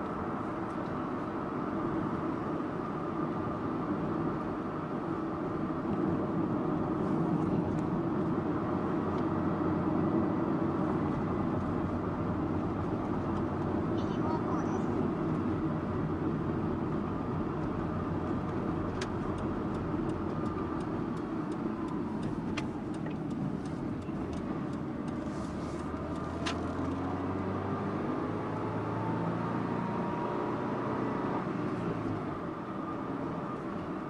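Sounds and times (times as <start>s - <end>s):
car road and engine noise: 0.0s - 34.0s.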